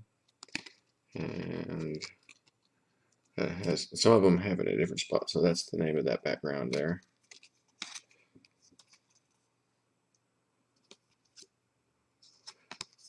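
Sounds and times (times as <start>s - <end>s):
trading cards clicking and scraping: 6.8s - 9.3s.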